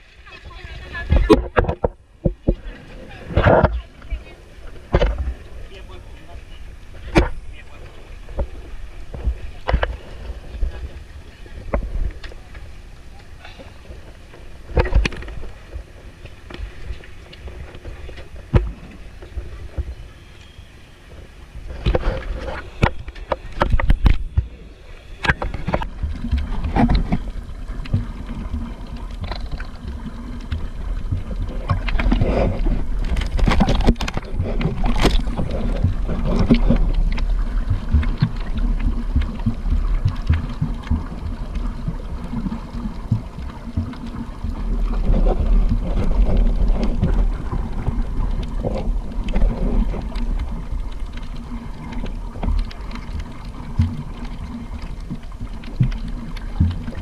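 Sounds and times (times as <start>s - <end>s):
water splashing against hull: 0.0s - 57.0s.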